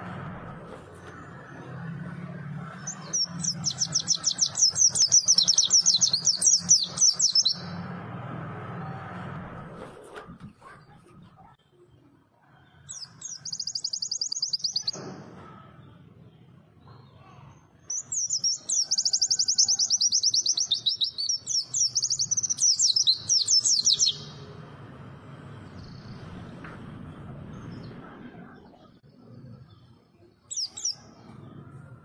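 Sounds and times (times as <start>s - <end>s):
bird twittering warble: 2.7s - 7.8s, 12.9s - 15.0s, 17.9s - 24.4s, 29.5s - 31.4s.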